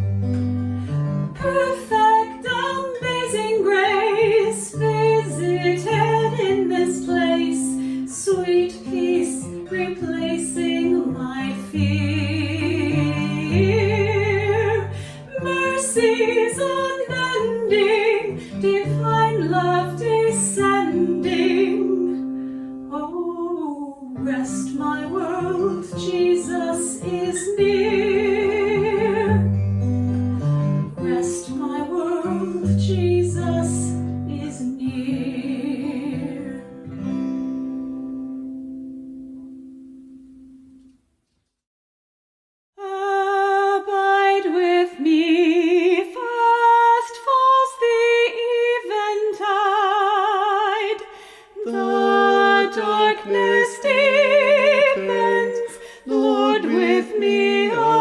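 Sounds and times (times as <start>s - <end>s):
guitar accompaniment: 0.0s - 23.3s, 24.1s - 41.1s, 51.6s - 58.0s
person singing a hymn: 1.4s - 22.3s, 51.6s - 58.0s.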